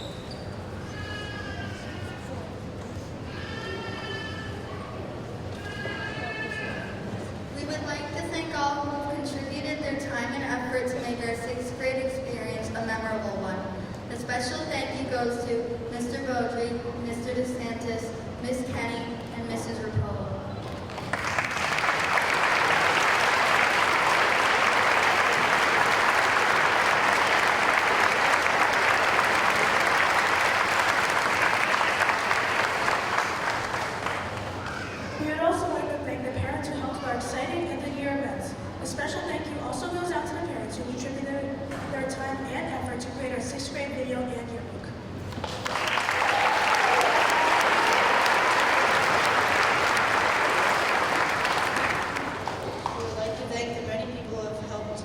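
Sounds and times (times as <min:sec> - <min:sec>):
audience applauding: 0:20.7 - 0:35.1, 0:45.3 - 0:53.1.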